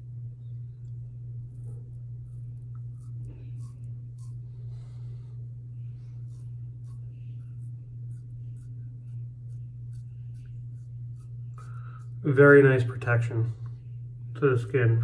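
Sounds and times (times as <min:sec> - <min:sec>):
low electrical hum: 0:00.0 - 0:15.0
razor scraping stubble: 0:01.4 - 0:05.2, 0:05.8 - 0:13.4.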